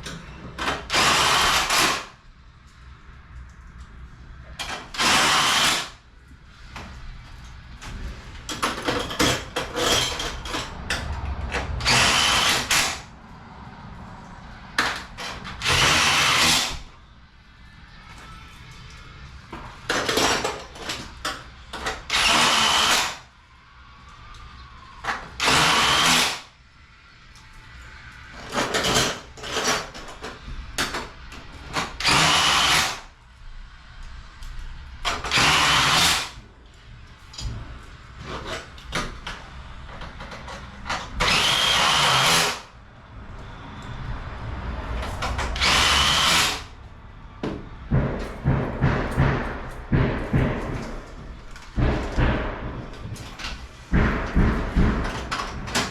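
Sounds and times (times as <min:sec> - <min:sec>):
power drill running: 0:00.9 - 0:02.1, 0:04.9 - 0:06.0, 0:11.8 - 0:13.0, 0:15.6 - 0:16.8, 0:22.1 - 0:23.2, 0:25.4 - 0:26.5, 0:32.0 - 0:33.1, 0:35.3 - 0:36.4, 0:41.2 - 0:42.7, 0:45.6 - 0:46.7.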